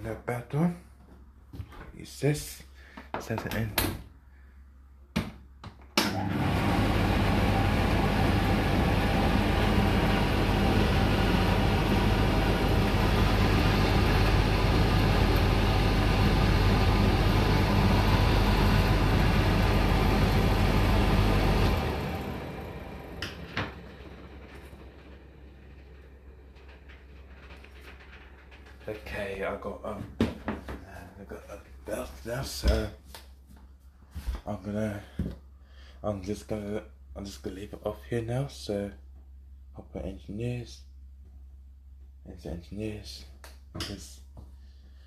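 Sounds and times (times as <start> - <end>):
tumble dryer motor humming: 6.0 - 29.6.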